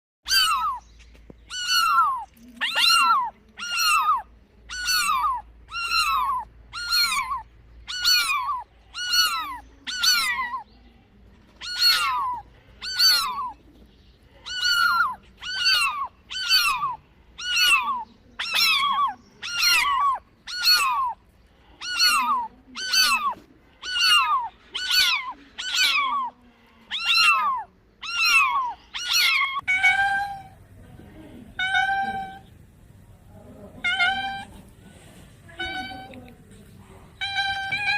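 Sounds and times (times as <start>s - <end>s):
kitten meowing: 0.3s - 0.8s, 1.5s - 10.6s, 11.6s - 13.6s, 14.5s - 21.2s, 21.8s - 26.3s, 26.9s - 30.6s, 31.6s - 32.5s, 33.8s - 34.6s, 35.5s - 36.4s, 37.2s - 37.9s.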